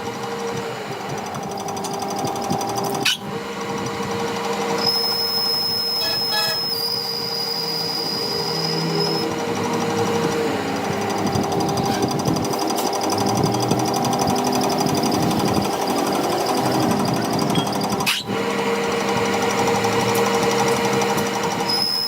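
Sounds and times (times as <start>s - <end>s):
workshop machine running: 0.0s - 22.0s
high thin whine: 3.0s - 22.0s.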